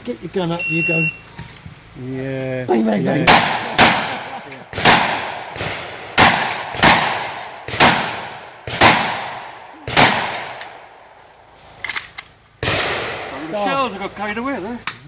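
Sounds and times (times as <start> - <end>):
shotgun shots echoing: 3.2 - 11.1, 12.6 - 13.7.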